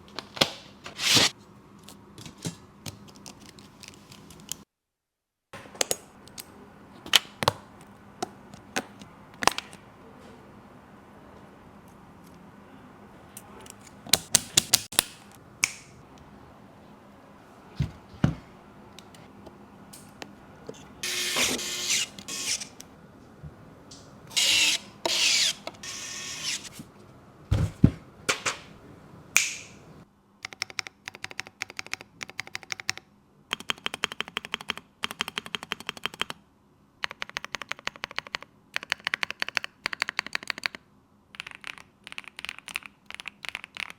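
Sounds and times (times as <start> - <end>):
mechanical keyboard keys clacking: 30.4 - 36.4, 37.0 - 40.8, 41.4 - 43.9.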